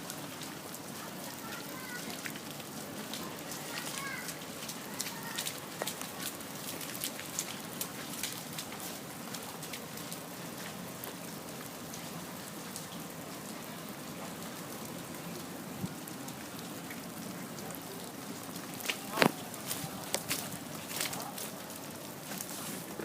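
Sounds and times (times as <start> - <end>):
precipitation pattering on surfaces: 18.8 - 21.6.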